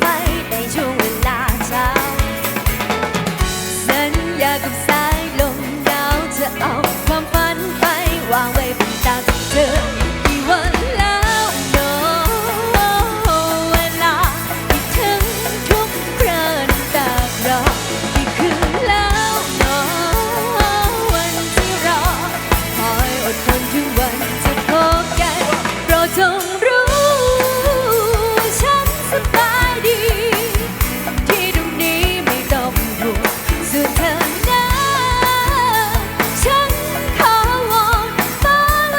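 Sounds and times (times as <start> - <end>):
drum kit beat: 0.0 - 38.9
live band playing pop: 0.0 - 38.9
wavering melodic lead line: 0.0 - 38.9.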